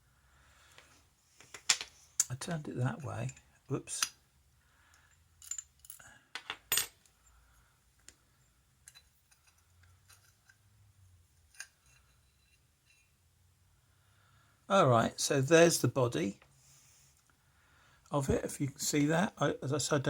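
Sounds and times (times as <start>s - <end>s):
padlock parts clinking and clicking: 4.9s - 7.3s, 8.8s - 10.6s.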